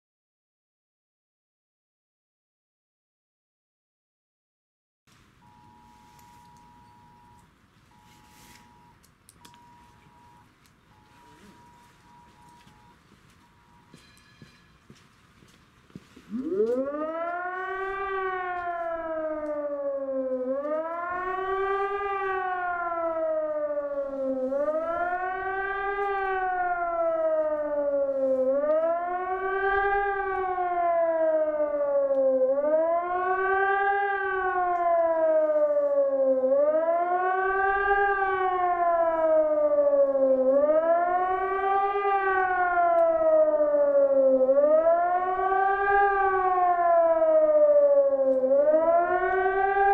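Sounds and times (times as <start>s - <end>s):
electronic siren howling: 5.4s - 14.0s, 16.2s - 49.9s.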